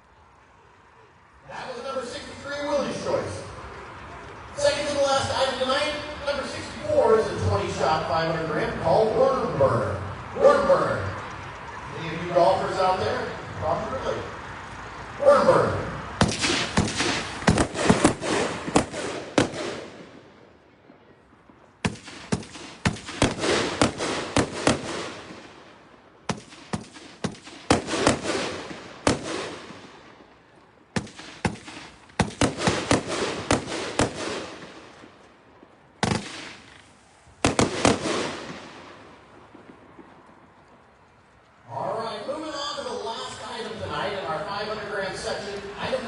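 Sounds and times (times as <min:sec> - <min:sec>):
fireworks bangs: 0:16.0 - 0:41.2.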